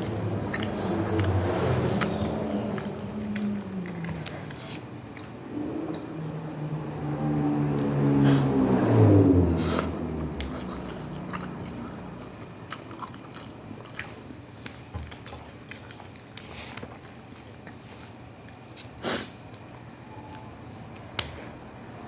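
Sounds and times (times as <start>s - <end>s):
chewing and biting noodles: 0.0s - 18.8s
wet mouth clicks: 0.5s - 5.3s.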